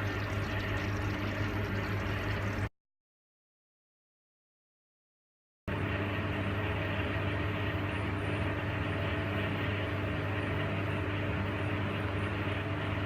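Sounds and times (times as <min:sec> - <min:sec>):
steady mechanical hum: 0:00.0 - 0:02.7, 0:05.7 - 0:13.0.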